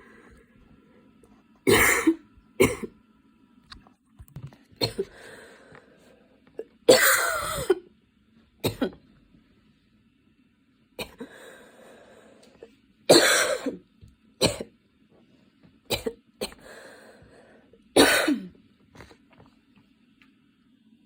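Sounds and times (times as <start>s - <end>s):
girl coughing hard: 1.7s - 2.9s, 6.9s - 7.8s, 8.6s - 9.0s, 13.1s - 13.8s, 18.0s - 18.5s.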